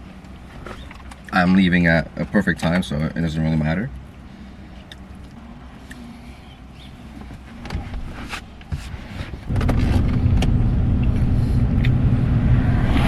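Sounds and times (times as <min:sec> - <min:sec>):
car engine idling: 0:09.5 - 0:13.0.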